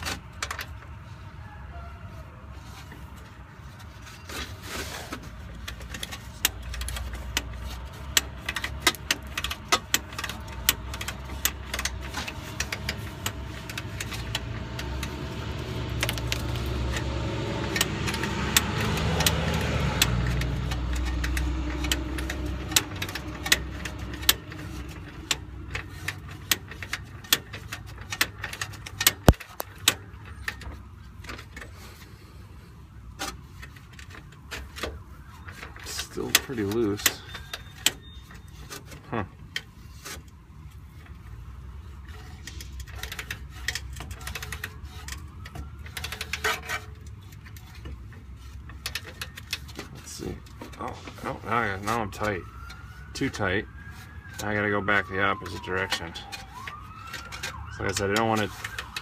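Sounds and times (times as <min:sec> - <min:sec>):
vehicle low rumble: 0:00.0 - 0:59.0
ratchet clicking: 0:05.6 - 0:31.7, 0:42.0 - 0:50.6.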